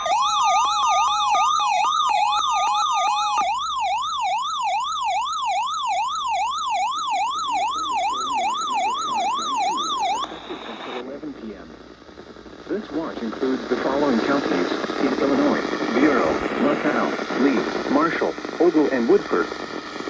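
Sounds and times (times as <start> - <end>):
electronic alert siren: 0.0 - 11.0.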